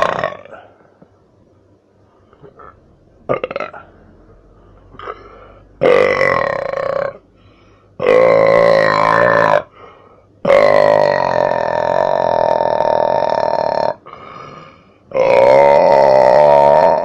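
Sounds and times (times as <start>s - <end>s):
person burping: 0.0s - 0.8s, 2.4s - 4.0s, 4.9s - 7.2s, 8.0s - 9.7s, 10.4s - 17.0s.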